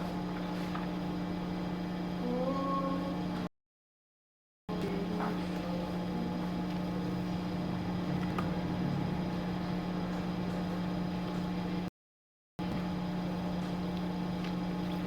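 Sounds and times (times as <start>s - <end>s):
electric motor hum: 4.7s - 11.9s.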